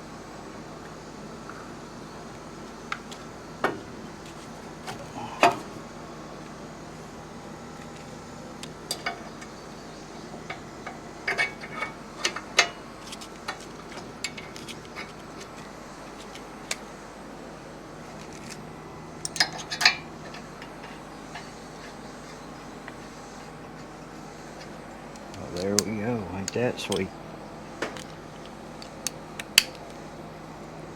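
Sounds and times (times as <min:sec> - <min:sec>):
steady low hum: 0:00.0 - 0:30.9
hand tools clicking on metal: 0:19.2 - 0:21.9, 0:25.2 - 0:27.1.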